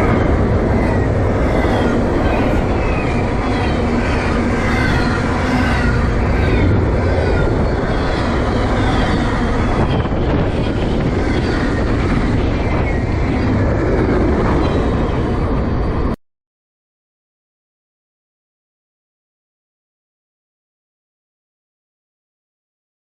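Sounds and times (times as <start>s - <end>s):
freight train rumbling past: 0.0s - 16.2s.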